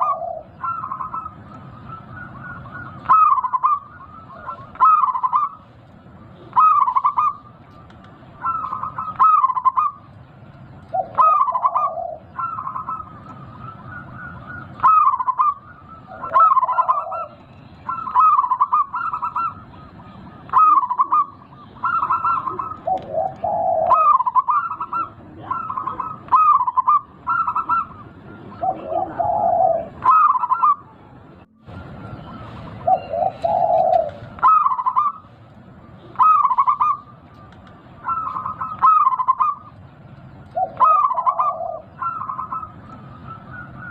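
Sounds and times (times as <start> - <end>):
dove cooing: 0.0 - 10.2, 10.8 - 43.9.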